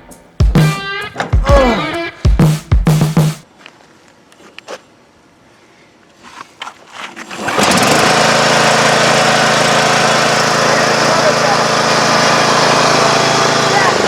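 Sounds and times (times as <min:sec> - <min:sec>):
lawn mower engine starting and running: 0:07.2 - 0:14.0.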